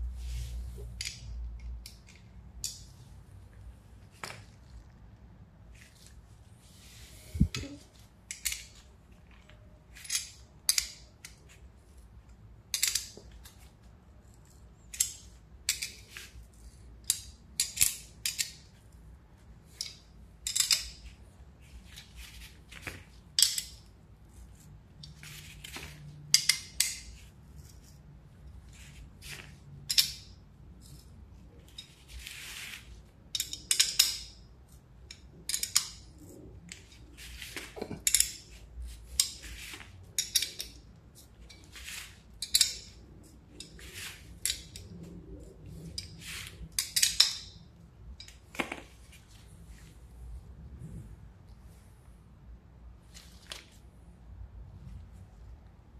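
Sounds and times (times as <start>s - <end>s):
metal tools clinking and rattling: 19.7s - 21.2s, 33.3s - 34.4s, 35.1s - 45.0s, 45.8s - 47.6s.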